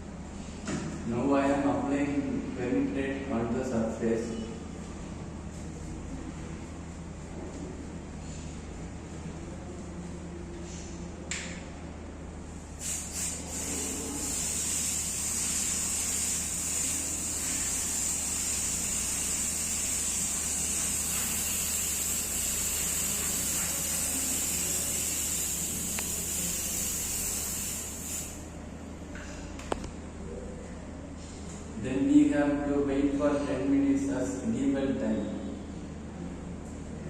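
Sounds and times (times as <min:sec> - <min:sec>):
aerosol can spraying: 0:12.8 - 0:28.5.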